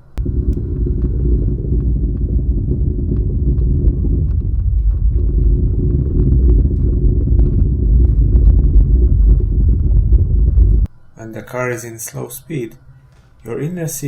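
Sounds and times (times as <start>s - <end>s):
car rolling low rumble: 0.0s - 10.9s.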